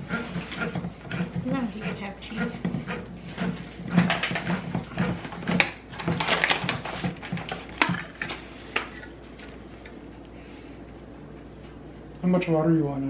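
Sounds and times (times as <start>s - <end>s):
kitchen utensil clicks and rustles: 5.2s - 9.1s.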